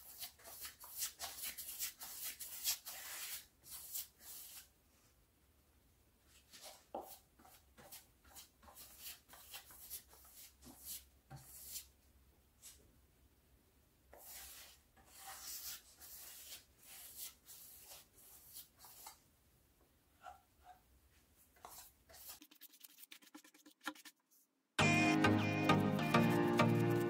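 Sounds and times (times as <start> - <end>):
brush swishing on wood: 21.6 - 24.2.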